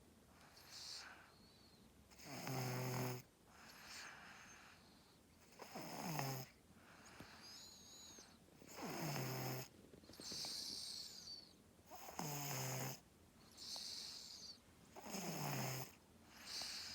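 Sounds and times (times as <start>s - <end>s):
soft breathy sounds: 0.2s - 2.4s, 3.1s - 16.9s
child snoring: 2.2s - 3.3s, 5.5s - 6.5s, 7.4s - 13.0s, 13.6s - 16.9s.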